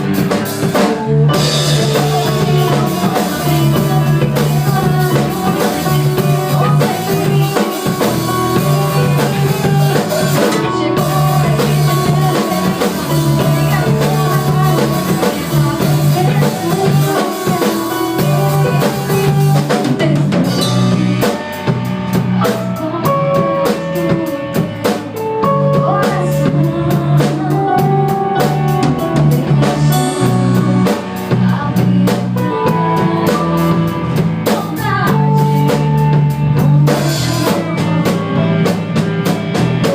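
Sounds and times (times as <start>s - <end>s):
rapid drum strokes: 0.0s - 23.0s, 23.6s - 39.9s
rock band playing: 0.0s - 39.9s.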